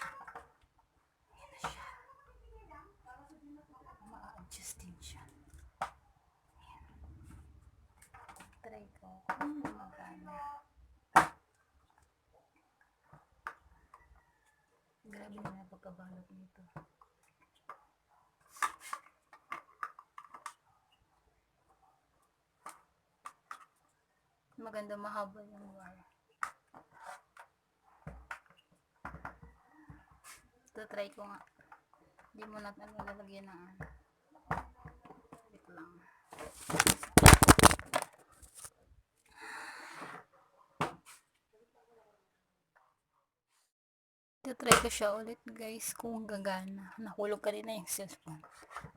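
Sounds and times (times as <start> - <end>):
hard objects knocking and rattling: 36.5 - 38.7
packaging crackling: 36.5 - 38.7.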